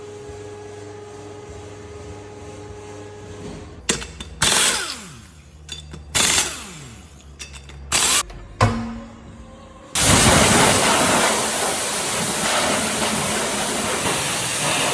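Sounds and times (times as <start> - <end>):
power tool motor whining: 4.4 - 8.3.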